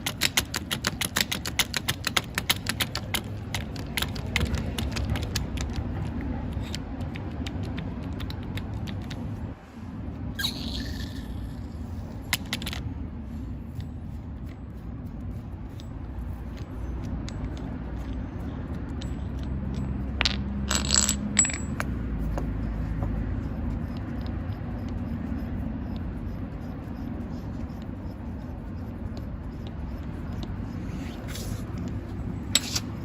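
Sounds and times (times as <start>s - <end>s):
steady low hum: 1.8s - 33.0s
metal parts clinking: 12.3s - 12.9s, 15.7s - 21.9s.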